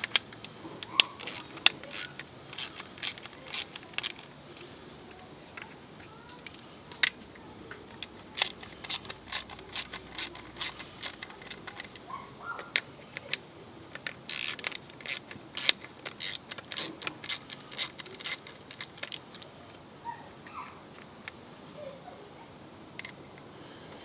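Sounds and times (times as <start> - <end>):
ratchet wrench clicking: 0.0 - 4.3, 7.9 - 12.0, 13.9 - 19.5.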